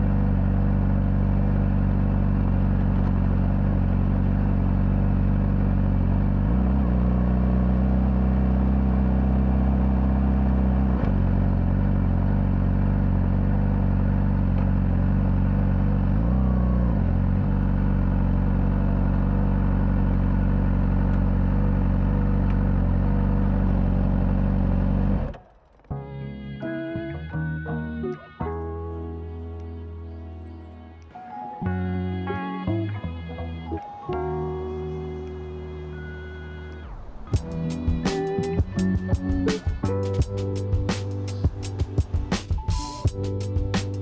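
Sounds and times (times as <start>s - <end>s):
motorcycle engine running: 0.0s - 25.6s, 37.3s - 44.0s.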